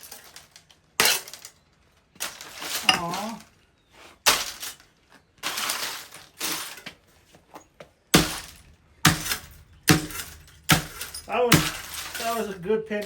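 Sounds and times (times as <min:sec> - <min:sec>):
breaking plastic clattering: 0:04.3 - 0:06.8, 0:08.2 - 0:13.0
laptop being smashed: 0:04.3 - 0:06.8, 0:08.1 - 0:12.6.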